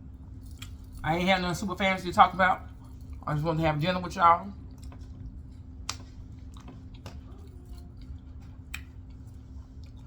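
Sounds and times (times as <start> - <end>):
low steady hum: 0.0 - 10.0
person chewing food: 0.2 - 1.0, 2.6 - 3.3, 4.6 - 10.0.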